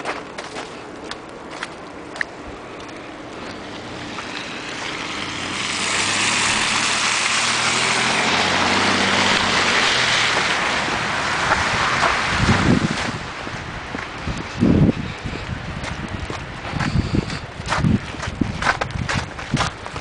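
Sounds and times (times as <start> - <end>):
vehicle driving past: 3.2 - 13.3.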